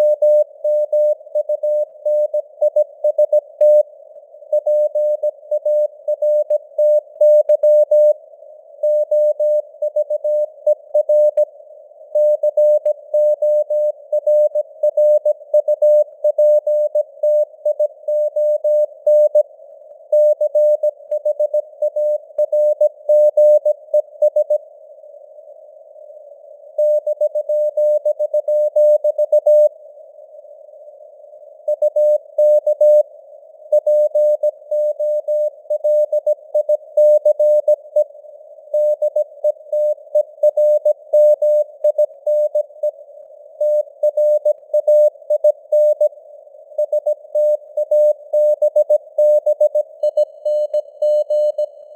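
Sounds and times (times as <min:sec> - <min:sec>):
morse code tone: 0:46.8 - 0:51.7.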